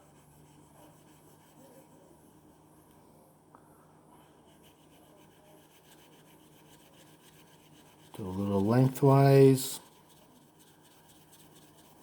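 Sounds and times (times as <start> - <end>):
blade rubbing on sandpaper: 4.6 - 12.0.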